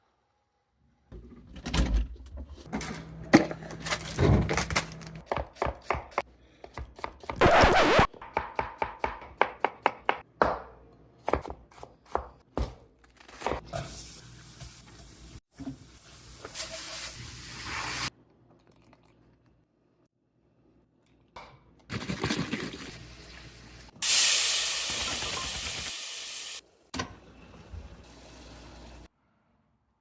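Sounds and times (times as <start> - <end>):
knife chopping on cutting board: 5.3 - 7.4, 8.2 - 12.8
loud hiss: 24.0 - 26.6.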